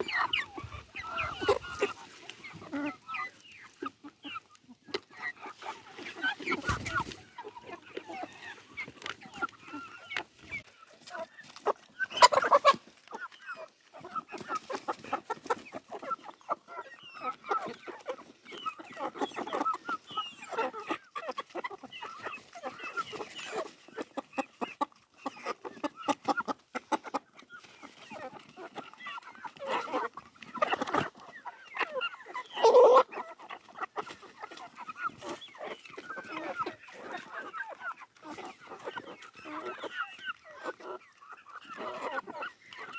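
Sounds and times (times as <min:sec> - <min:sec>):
chicken squawking: 0:00.0 - 0:03.6, 0:05.1 - 0:08.6, 0:29.0 - 0:42.9
chickens clucking: 0:00.0 - 0:42.9.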